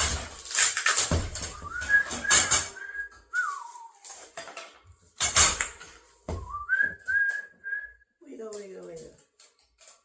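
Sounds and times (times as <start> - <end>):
loud clatter: 0.0 - 3.0
clothing rack parts clanking: 0.0 - 7.3, 8.4 - 10.0
person whistling: 1.6 - 4.2, 6.3 - 8.1.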